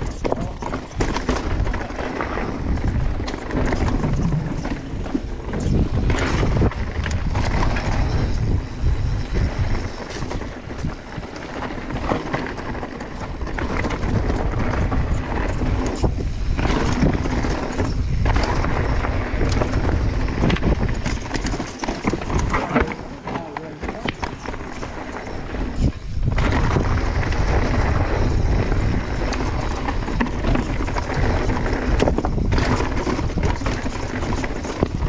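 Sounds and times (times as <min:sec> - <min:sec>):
bike knocks and rattles: 0:00.0 - 0:35.0
tyres running over rocks: 0:00.0 - 0:35.0
low rumble: 0:02.5 - 0:09.8.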